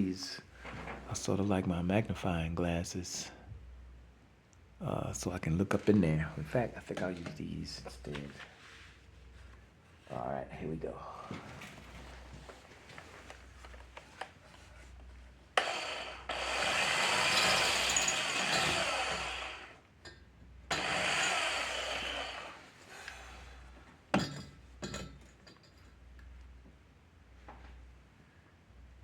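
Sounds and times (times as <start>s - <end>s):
power grinder cutting metal: 15.6s - 19.8s, 20.7s - 22.7s.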